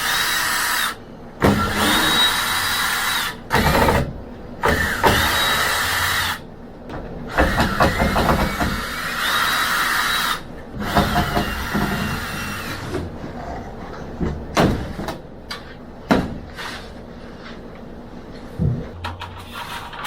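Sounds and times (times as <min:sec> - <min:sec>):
building material scraping: 0:01.4 - 0:03.1.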